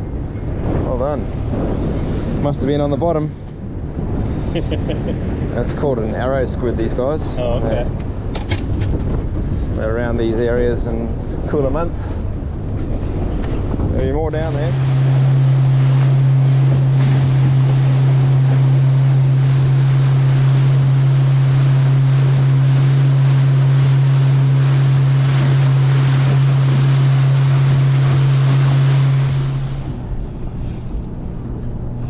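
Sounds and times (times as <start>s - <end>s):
boat motor running: 0.0s - 32.0s
wind rushing: 0.0s - 32.0s
water rushing past: 13.0s - 30.5s.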